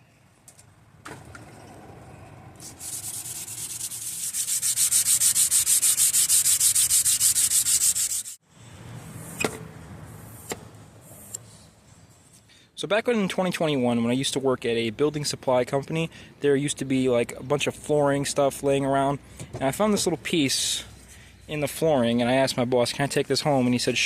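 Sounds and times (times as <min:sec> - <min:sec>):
sandpaper rubbing metal blade: 0:02.6 - 0:08.4.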